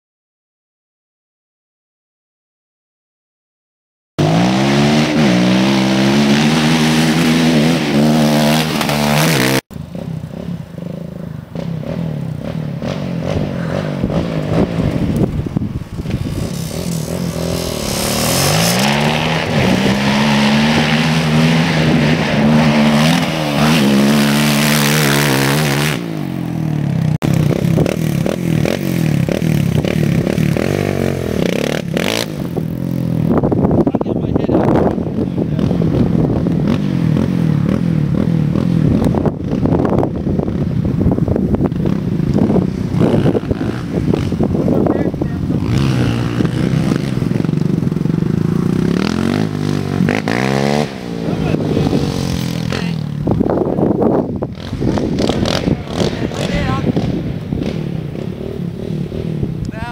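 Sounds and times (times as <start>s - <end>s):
atv engine revving: 4.2s - 59.9s
wind: 4.2s - 59.9s.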